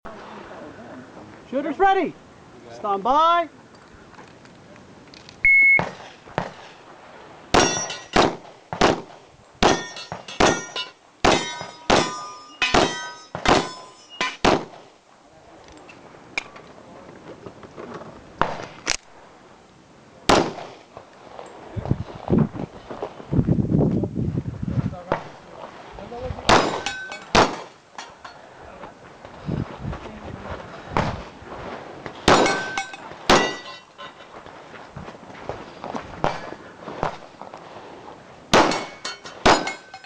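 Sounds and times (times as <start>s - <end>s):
electronic timer beep: 5.4s - 5.8s
steel targets ringing: 7.6s - 8.2s, 9.6s - 14.5s, 26.5s - 28.4s, 32.3s - 34.2s, 38.6s - 40.0s
pistol shots: 7.6s - 14.8s, 20.3s - 20.8s, 26.5s - 27.7s, 32.3s - 33.6s, 38.5s - 39.8s.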